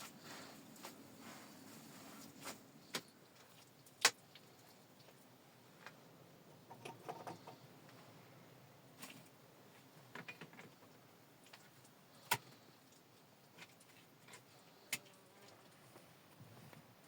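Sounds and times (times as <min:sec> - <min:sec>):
clicks and knocks of handling objects: 0:06.6 - 0:07.6, 0:10.0 - 0:15.1.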